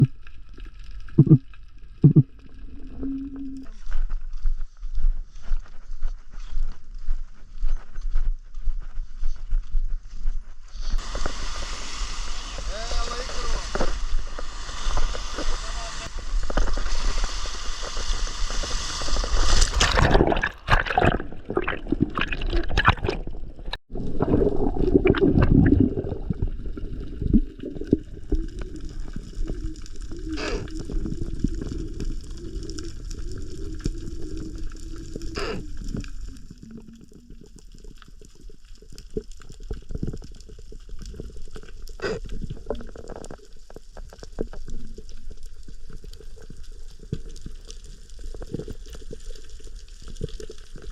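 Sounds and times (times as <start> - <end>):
muffled underwater wash: 10.9 - 50.9
sea water splashing: 11.0 - 38.1.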